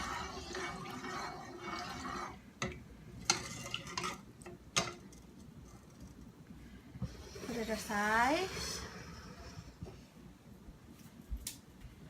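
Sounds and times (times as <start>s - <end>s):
utensil stirring liquid sauce: 0.0s - 5.1s.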